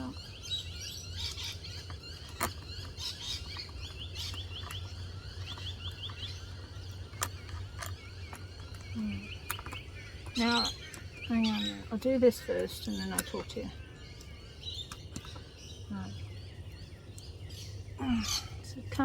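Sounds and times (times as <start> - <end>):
small birds chirping: 0.0 - 19.0
steady low hum: 0.0 - 19.0
plastic pots and bolts clicking: 1.3 - 11.7.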